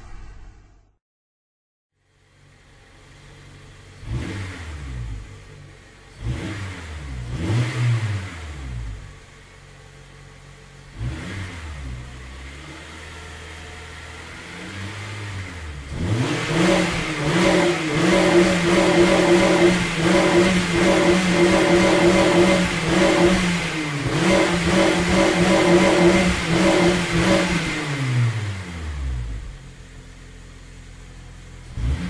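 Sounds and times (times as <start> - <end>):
car engine revving: 2.4 - 32.0.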